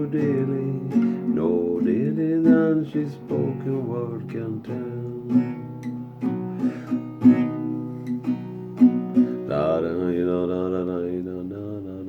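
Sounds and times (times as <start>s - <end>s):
man singing held tone: 0.0s - 5.7s, 9.4s - 12.0s
acoustic guitar strumming: 0.0s - 11.4s.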